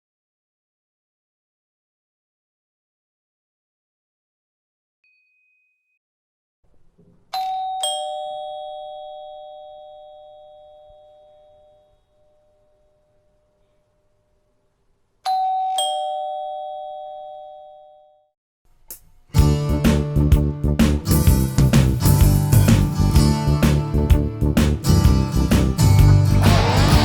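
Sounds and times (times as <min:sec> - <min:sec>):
two-tone chime doorbell: 0:07.4 - 0:13.0, 0:15.3 - 0:18.3.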